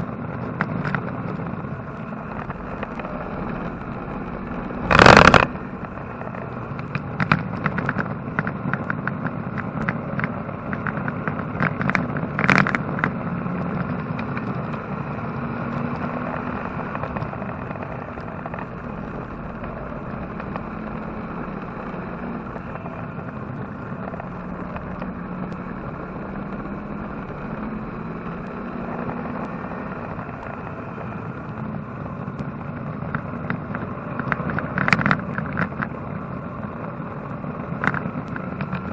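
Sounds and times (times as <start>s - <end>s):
race car engine droning: 0.0s - 38.9s
rattles: 2.0s - 8.0s.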